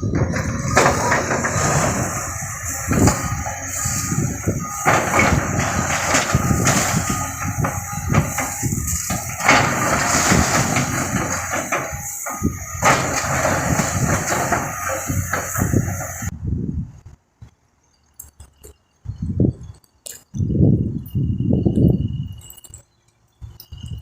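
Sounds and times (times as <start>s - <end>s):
wood and debris crashing: 0.0s - 16.3s
machinery rumbling: 0.0s - 16.4s.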